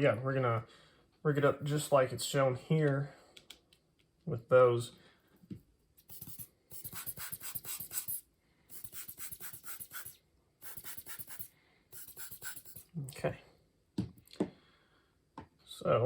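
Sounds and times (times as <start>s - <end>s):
metal threads ticking as screwed: 6.1s - 12.8s.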